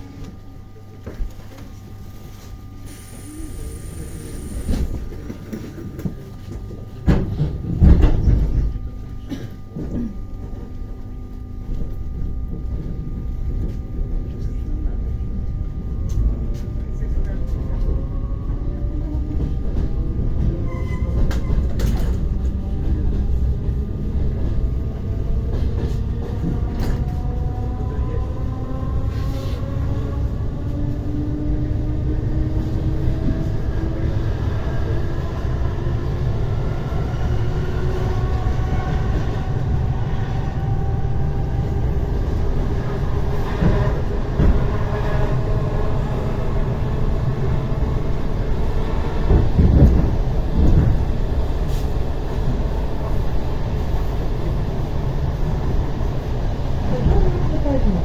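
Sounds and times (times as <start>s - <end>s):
train carriage low rumble: 0.0s - 58.0s
thin high whine: 2.8s - 4.9s.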